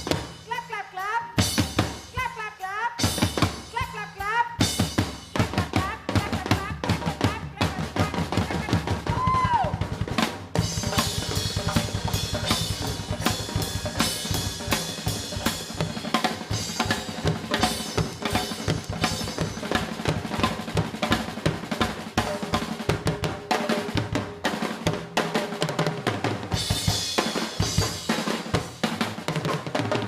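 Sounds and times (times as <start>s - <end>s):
fast drumming: 0.0s - 30.0s.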